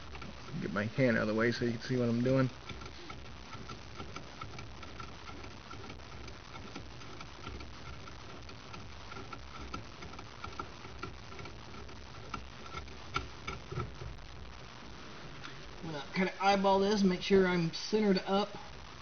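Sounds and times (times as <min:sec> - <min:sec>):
steady light ticking: 0:00.0 - 0:14.0
sharp metallic clicks: 0:00.0 - 0:14.1.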